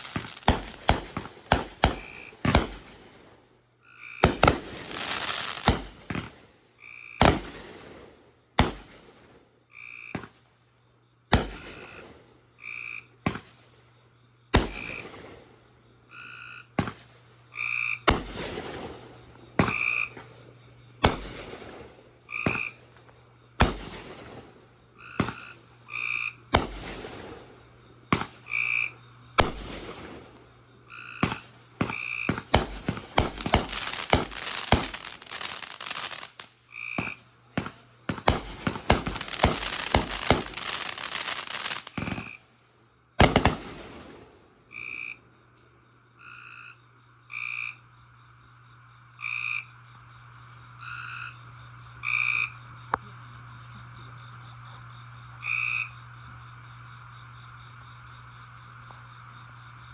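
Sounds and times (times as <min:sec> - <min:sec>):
frogs croaking: 0:00.0 - 0:03.0, 0:03.6 - 0:08.8, 0:09.6 - 0:59.9
fireworks bangs and crackling: 0:00.0 - 0:03.4, 0:04.2 - 0:06.5, 0:07.2 - 0:09.4, 0:11.3 - 0:12.2, 0:13.2 - 0:13.8, 0:14.5 - 0:15.6, 0:16.8 - 0:17.2, 0:18.0 - 0:25.6, 0:26.5 - 0:28.5, 0:29.3 - 0:30.5, 0:31.2 - 0:42.4, 0:43.2 - 0:44.6
steady low hum: 0:00.0 - 0:59.9.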